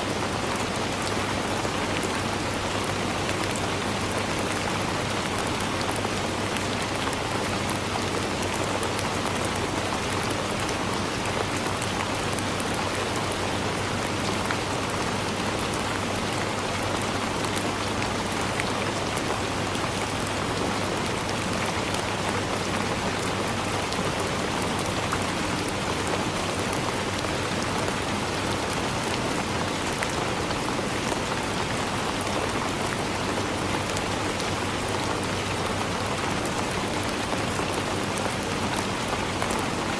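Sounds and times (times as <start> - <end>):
rain on leaves: 0.0 - 39.9.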